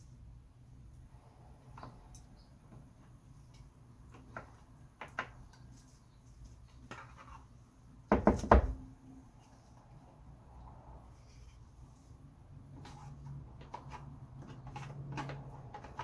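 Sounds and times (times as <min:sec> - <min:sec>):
loud knocks: 0:08.1 - 0:08.8.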